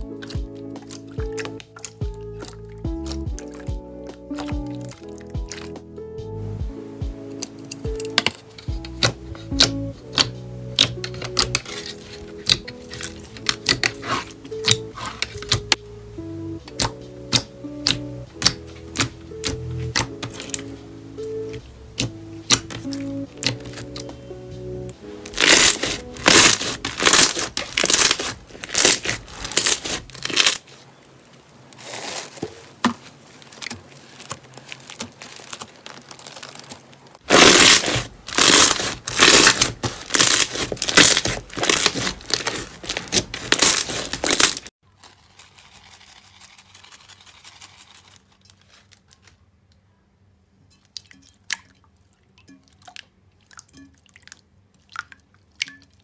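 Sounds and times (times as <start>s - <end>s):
slime crackling and popping: 0.0s - 5.8s, 7.3s - 15.8s, 16.7s - 20.8s, 21.5s - 24.1s, 25.2s - 30.8s, 31.8s - 44.7s
slime squishing: 0.0s - 5.8s, 7.2s - 49.3s.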